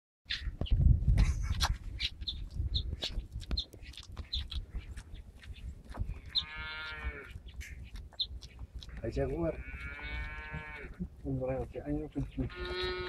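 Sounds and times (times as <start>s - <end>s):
high bird chirps: 0.3s - 0.8s, 1.9s - 9.0s
calf mooing: 6.3s - 7.3s, 9.4s - 11.0s, 12.4s - 13.0s.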